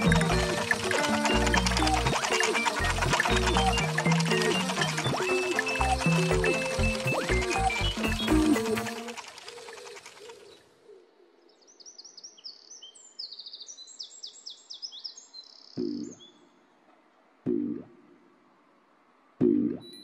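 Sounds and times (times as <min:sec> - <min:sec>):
music: 0:00.0 - 0:09.2
birds chirping: 0:00.0 - 0:16.8, 0:17.4 - 0:18.0.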